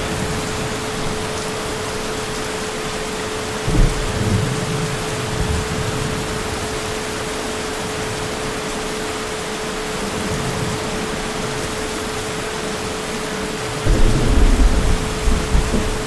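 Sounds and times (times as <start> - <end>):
heavy rain: 0.0 - 16.0
low thunder rumble: 3.6 - 6.7, 13.8 - 16.0.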